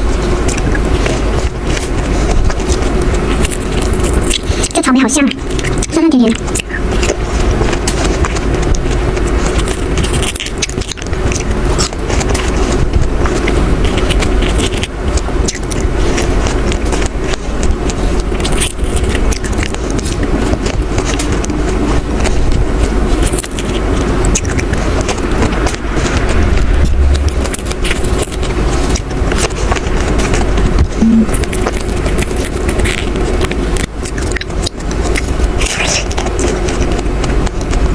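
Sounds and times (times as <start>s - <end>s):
chewing strawberries: 0.0s - 37.9s
low rumble: 25.3s - 30.1s.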